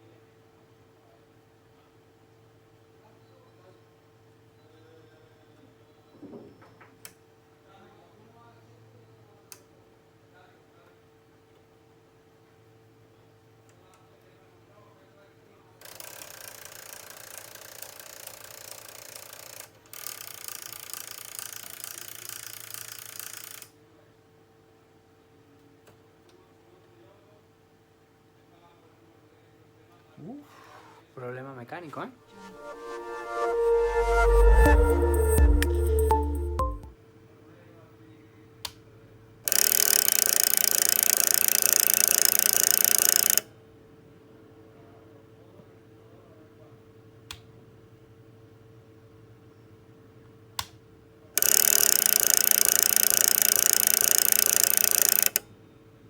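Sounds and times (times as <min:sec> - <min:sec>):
gears rattling rapidly: 0:51.4 - 0:55.4.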